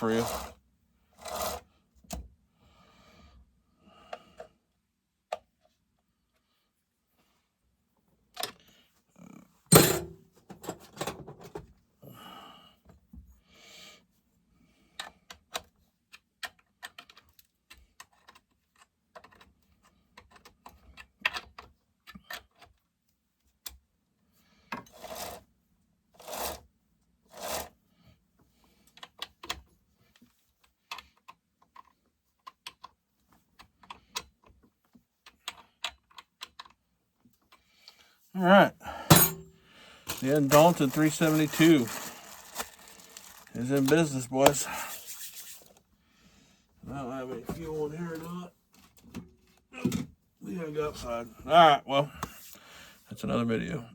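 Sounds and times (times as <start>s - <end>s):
metal parts and tools clicking: 40.1s - 45.7s
metal scrapes: 40.1s - 45.8s.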